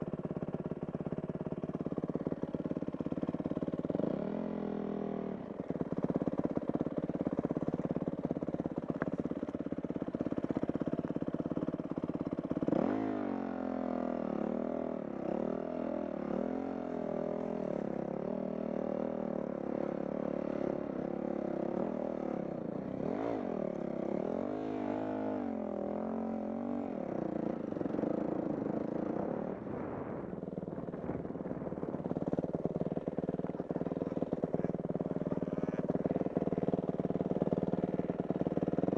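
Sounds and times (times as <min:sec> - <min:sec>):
dirt bike engine revving: 0:12.7 - 0:13.3, 0:23.0 - 0:29.4.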